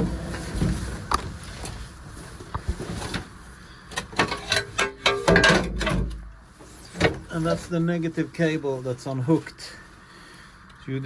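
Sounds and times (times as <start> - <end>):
floor lid knocks and clunks: 0.0 - 1.2.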